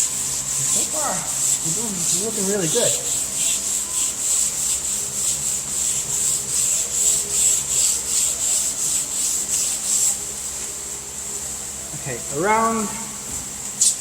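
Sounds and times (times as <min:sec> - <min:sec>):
sandpaper rasping back and forth: 0:00.0 - 0:10.6
steady high hiss: 0:00.0 - 0:14.0.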